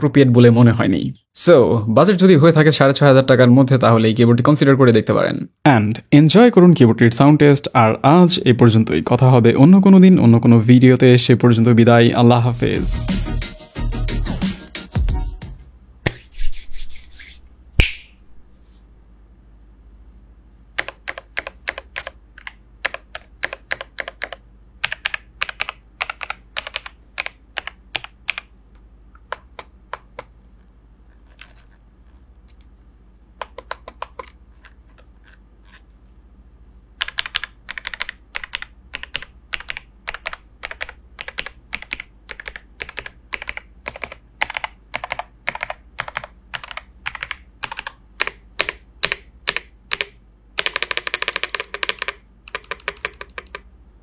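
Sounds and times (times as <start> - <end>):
mechanical keyboard typing: 20.8 - 28.5, 33.4 - 34.8, 37.0 - 53.7.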